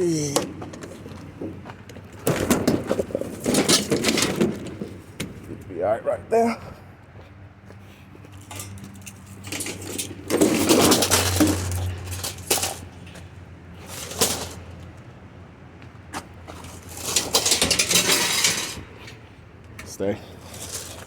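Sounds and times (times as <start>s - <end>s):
scrap metal clattering: 0.1s - 5.6s, 8.4s - 15.0s, 16.2s - 19.4s, 20.3s - 21.0s.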